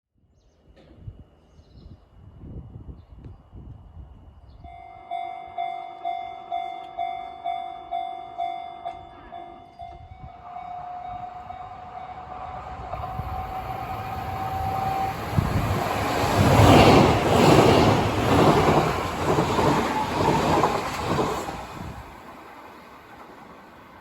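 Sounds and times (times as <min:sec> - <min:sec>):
train rumbling: 0:03.9 - 0:24.0
level crossing warning bell: 0:04.7 - 0:12.3.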